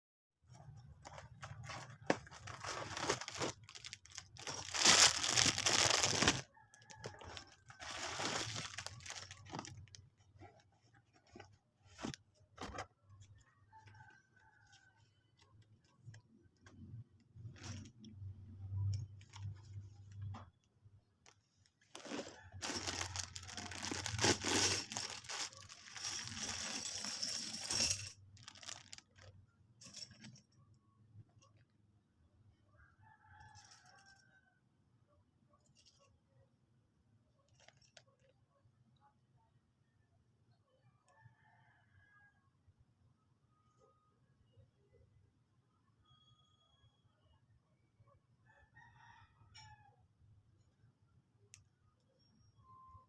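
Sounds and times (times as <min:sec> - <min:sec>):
packaging tearing and rustling: 0:01.4 - 0:10.0, 0:22.0 - 0:27.3, 0:28.4 - 0:29.3.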